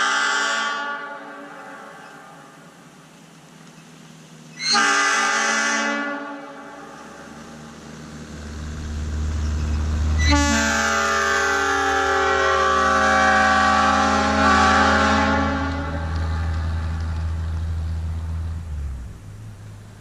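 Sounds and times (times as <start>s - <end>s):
locomotive air horn blasts: 0.0s - 2.4s, 4.6s - 7.1s, 10.2s - 16.2s
low rumble: 7.0s - 10.6s, 15.3s - 20.0s.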